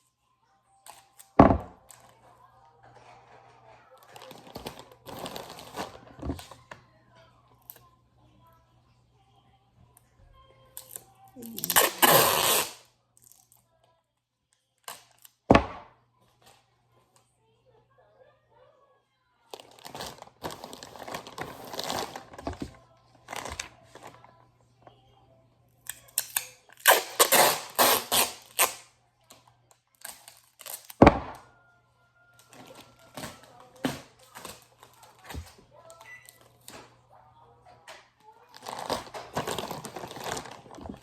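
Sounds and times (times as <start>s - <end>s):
tape crinkling and tearing: 4.0s - 6.5s, 10.8s - 13.6s, 19.5s - 24.2s, 25.9s - 28.9s, 29.9s - 31.0s, 38.5s - 41.0s.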